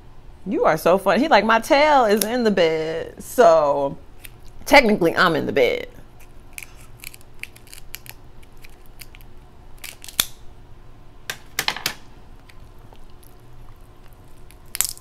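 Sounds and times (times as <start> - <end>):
crab shells cracking by hand: 6.2 - 10.4, 12.4 - 15.0.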